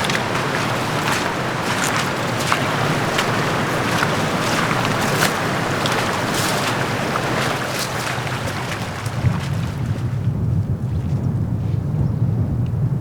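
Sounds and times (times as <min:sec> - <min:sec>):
creek water rushing: 0:00.0 - 0:10.1
small water splashes: 0:00.0 - 0:10.2.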